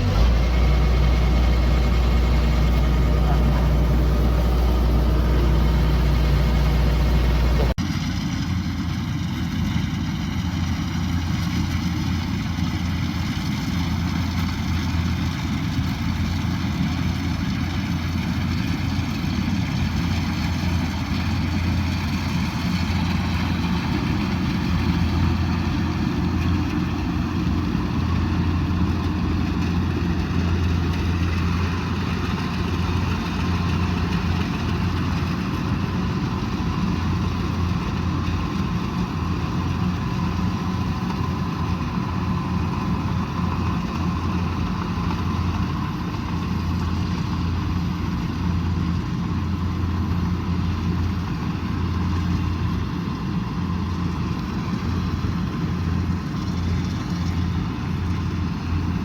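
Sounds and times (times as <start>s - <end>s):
combine harvester engine humming: 0.0s - 59.0s.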